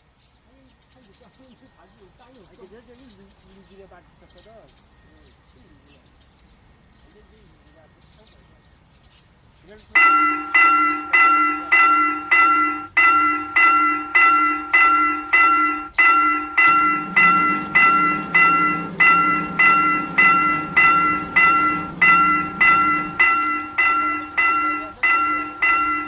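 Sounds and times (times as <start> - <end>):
train rumbling: 9.9 - 26.0
level crossing bell ringing: 10.0 - 26.0.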